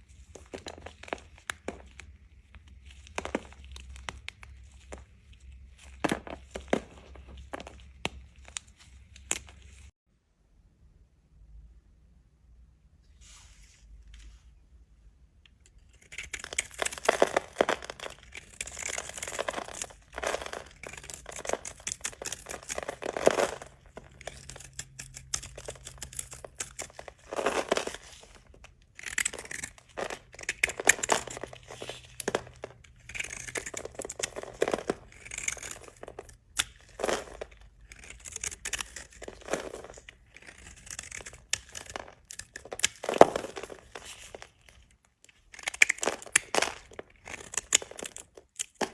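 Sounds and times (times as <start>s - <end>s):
knife cutting dry soap: 15.7s - 48.9s.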